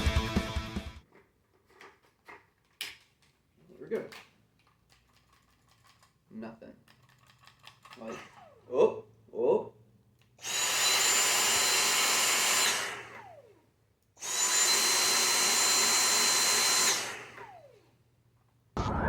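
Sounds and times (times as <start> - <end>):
vacuum motor whining: 8.0 - 9.0, 10.4 - 13.6, 14.2 - 17.9.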